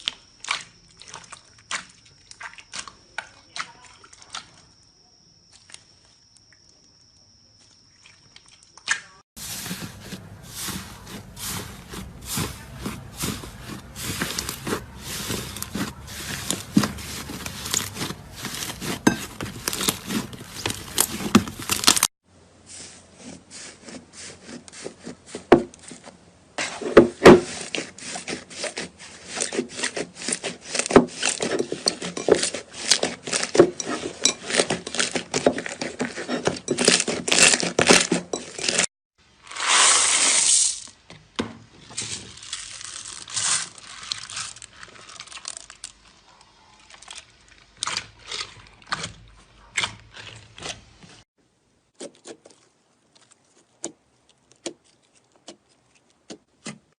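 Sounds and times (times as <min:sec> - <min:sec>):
slime crackling and popping: 0:15.2 - 0:22.1.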